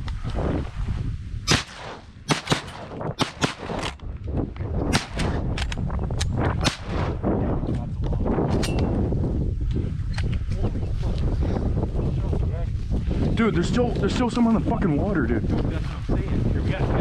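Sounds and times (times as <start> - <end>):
low wind rumble: 0.0 - 17.0
shotguns firing: 1.5 - 4.0, 4.9 - 5.6, 6.6 - 7.2.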